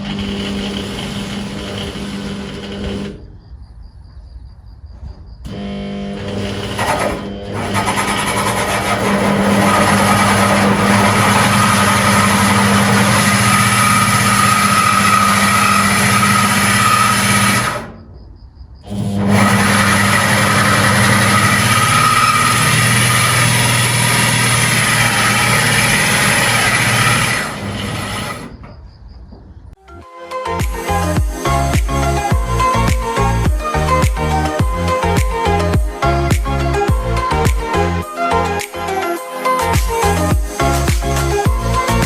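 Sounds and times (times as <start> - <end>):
electric drill running under load: 0.0 - 3.2, 5.5 - 17.9, 18.9 - 28.5, 30.6 - 37.8.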